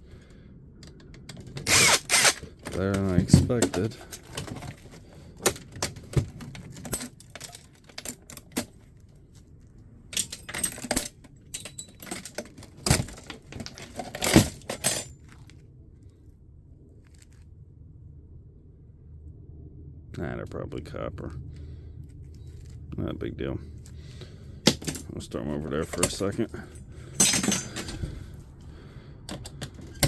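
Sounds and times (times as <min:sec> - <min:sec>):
small metal parts clinking: 0:01.2 - 0:09.0, 0:10.1 - 0:15.5, 0:24.7 - 0:25.2, 0:25.8 - 0:28.3.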